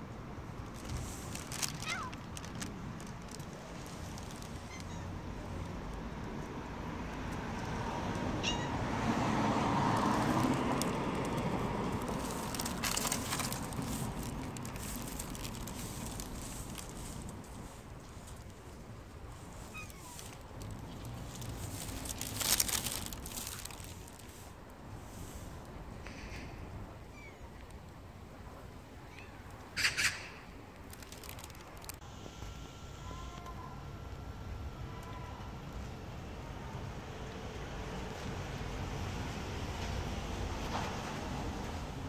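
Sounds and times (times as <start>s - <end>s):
steady background noise: 0.0s - 42.0s
cat meowing: 1.8s - 2.2s, 4.6s - 5.2s, 8.4s - 8.8s, 19.7s - 20.3s.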